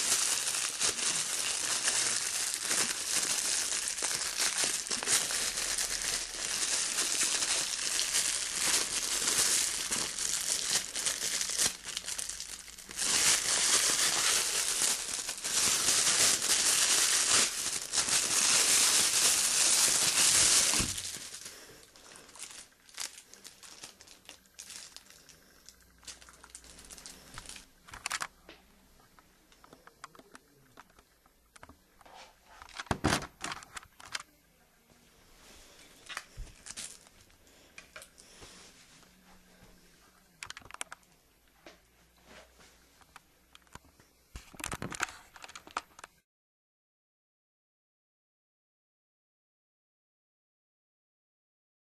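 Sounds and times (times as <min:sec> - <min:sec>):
packaging crinkling and rustling: 0:00.0 - 0:28.4, 0:29.1 - 0:34.3, 0:36.0 - 0:38.3, 0:40.3 - 0:41.1, 0:44.4 - 0:46.2.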